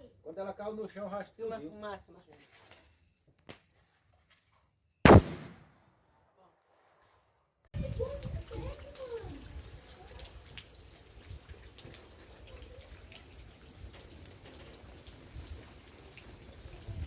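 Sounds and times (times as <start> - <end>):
faint light rain: 7.7 - 17.0
raindrops ticking: 7.8 - 16.8.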